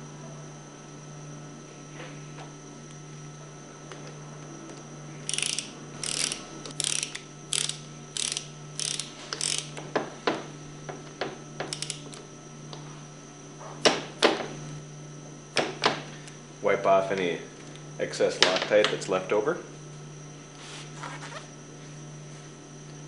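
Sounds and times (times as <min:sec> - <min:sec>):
ratchet wrench strokes: 0:05.3 - 0:09.8, 0:11.7 - 0:12.2.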